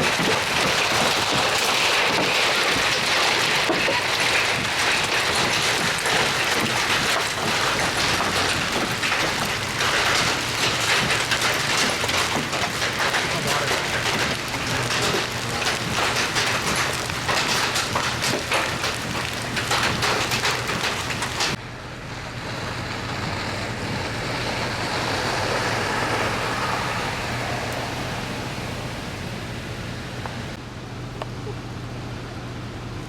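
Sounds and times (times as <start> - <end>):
hail and rain clattering: 0.0 - 21.6, 23.9 - 29.2
rain hissing: 0.0 - 21.6
constant low hum: 27.1 - 33.0.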